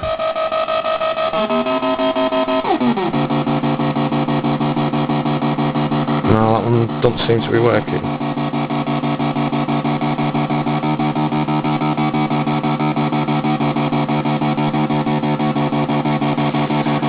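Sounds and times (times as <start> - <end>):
pulsing electronic synth tone: 0.0 - 17.0.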